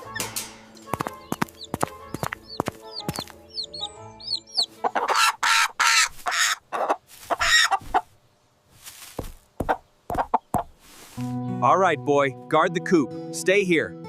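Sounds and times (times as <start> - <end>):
chickens clucking and squawking: 0.0 - 8.2, 9.6 - 10.8.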